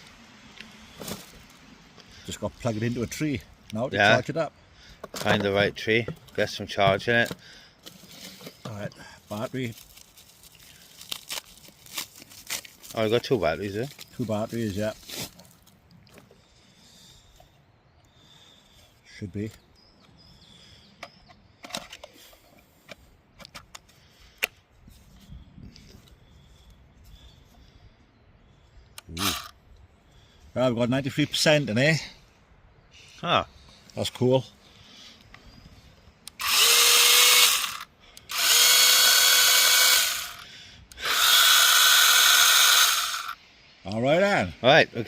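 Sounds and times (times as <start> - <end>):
mini chainsaw motor whine: 29.2 - 29.5, 36.3 - 43.4.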